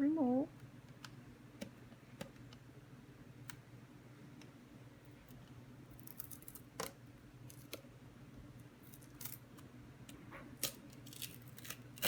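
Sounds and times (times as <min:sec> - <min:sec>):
tape peeling crackles: 0:06.0 - 0:07.8, 0:08.8 - 0:09.6, 0:10.6 - 0:12.0.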